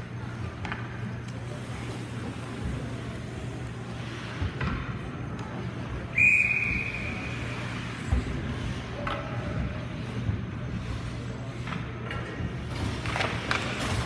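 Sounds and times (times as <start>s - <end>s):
referee's whistle: 6.1s - 7.6s.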